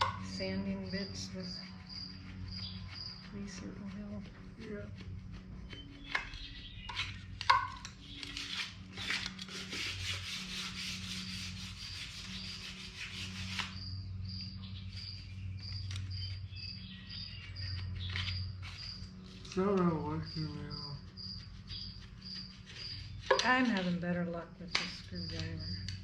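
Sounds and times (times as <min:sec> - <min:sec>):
emery cloth scrubbing metal: 0:00.0 - 0:05.0.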